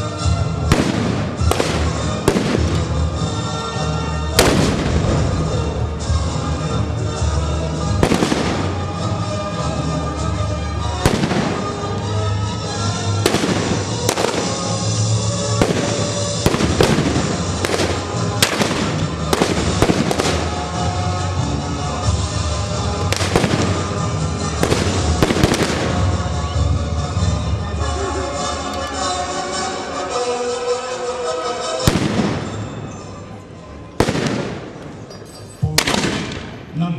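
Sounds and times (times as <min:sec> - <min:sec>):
music playing: 0:00.0 - 0:36.9
blank gunshots: 0:00.7 - 0:03.0, 0:04.4 - 0:05.3, 0:08.0 - 0:08.9, 0:11.0 - 0:12.0, 0:15.5 - 0:20.6, 0:23.1 - 0:24.0, 0:34.0 - 0:35.1, 0:35.7 - 0:36.7.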